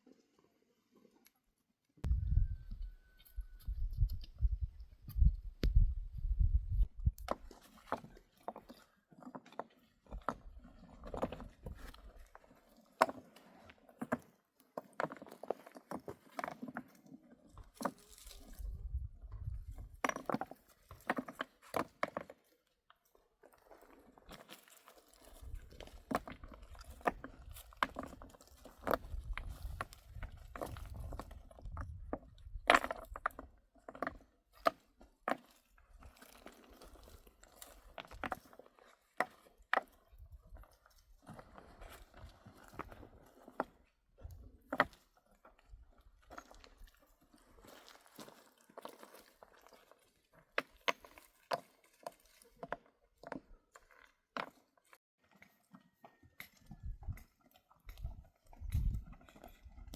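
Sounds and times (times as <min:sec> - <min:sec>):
sharp knocks and crunches: 0:25.1 - 0:38.6.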